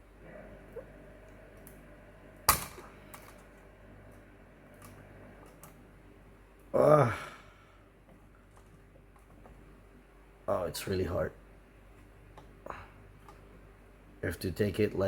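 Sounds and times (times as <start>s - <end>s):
loud sharp snap: 2.5s - 2.9s.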